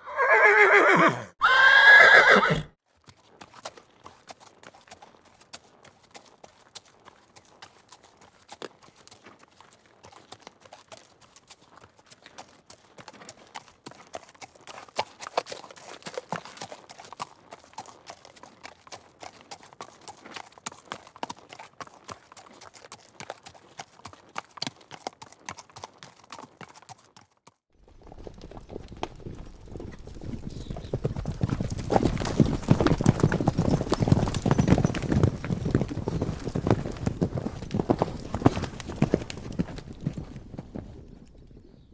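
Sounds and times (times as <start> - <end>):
horse hooves clip-clopping: 0.2 - 41.9
dense hoofbeats with deep rumble: 27.8 - 41.9.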